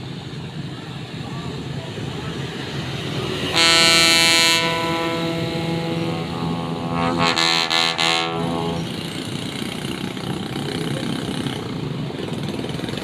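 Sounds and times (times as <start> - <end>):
vehicle air horn blast: 3.4 - 9.3
short horn toots: 3.5 - 9.1.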